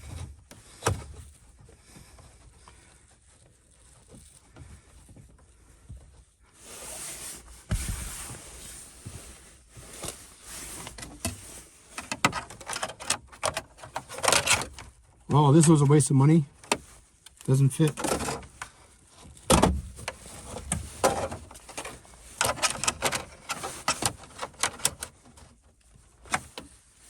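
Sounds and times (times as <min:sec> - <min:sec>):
rustling: 0:00.0 - 0:27.0
clicks and knocks in dashboard: 0:12.0 - 0:14.9, 0:19.4 - 0:25.4.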